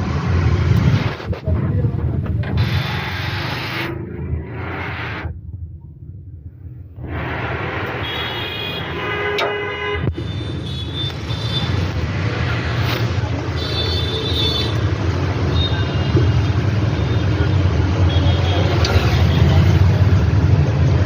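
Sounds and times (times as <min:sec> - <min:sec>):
horn sounding: 0:07.9 - 0:11.8.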